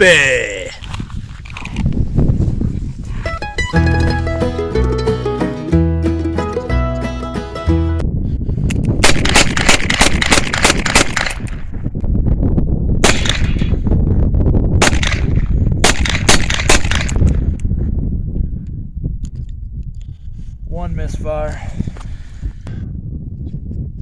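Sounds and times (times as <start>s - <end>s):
bluegrass music: 3.3s - 8.0s
revolver gunshots: 9.0s - 11.5s, 13.0s - 13.7s, 14.8s - 17.2s.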